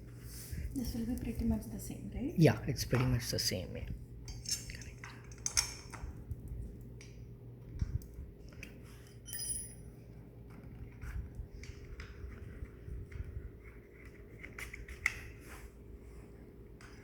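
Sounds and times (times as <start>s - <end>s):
metallic clicks of screws and tool: 4.3s - 6.0s
ringing clink: 9.2s - 10.0s.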